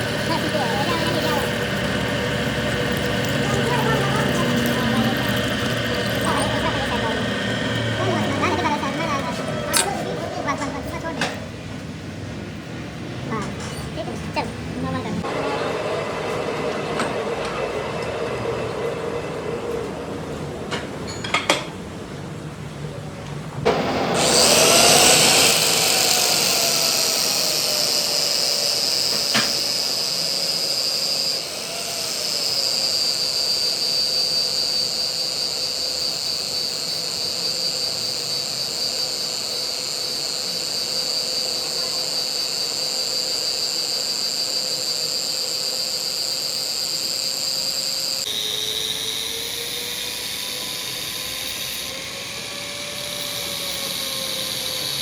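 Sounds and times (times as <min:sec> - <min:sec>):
power tool whining: 0:00.0 - 0:11.4, 0:23.7 - 0:55.0.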